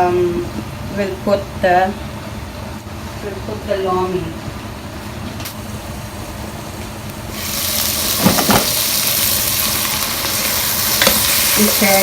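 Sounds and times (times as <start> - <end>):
prawns sizzling in a pan: 7.1 - 12.0
utensil knocking on pan: 8.2 - 8.7.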